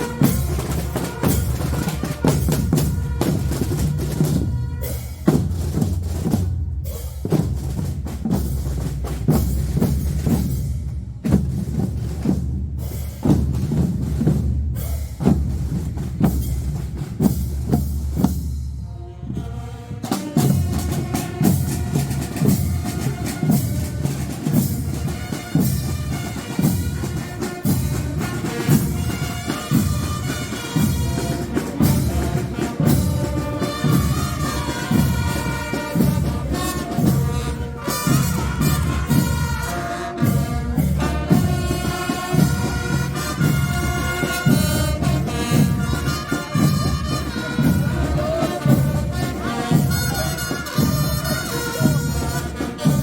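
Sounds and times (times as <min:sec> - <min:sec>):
trumpets and trombones: 0:00.0 - 0:06.4, 0:17.2 - 0:53.0
marching drumbeat: 0:00.0 - 0:53.0.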